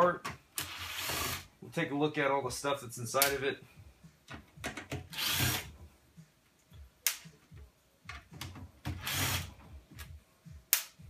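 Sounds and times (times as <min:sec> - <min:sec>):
power drill driving screws: 0:00.6 - 0:01.5, 0:05.1 - 0:05.7, 0:09.0 - 0:09.5
sharp clicks and knocks: 0:04.3 - 0:05.1.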